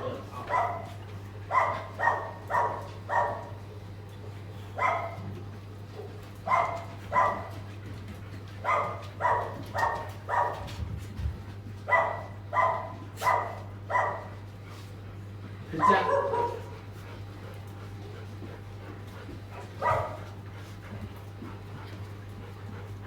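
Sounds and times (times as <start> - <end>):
dog barking: 0.4 - 3.6, 4.8 - 5.3, 6.4 - 7.6, 8.6 - 10.7, 11.9 - 14.4, 15.7 - 16.7, 19.8 - 20.2.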